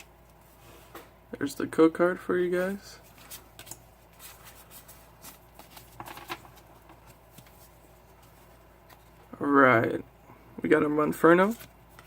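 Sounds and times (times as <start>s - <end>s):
cards flicked and rustling: 3.1s - 9.2s.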